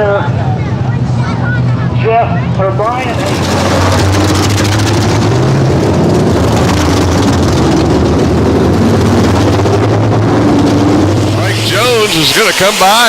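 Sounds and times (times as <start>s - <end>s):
race car engines droning: 0.0s - 13.0s.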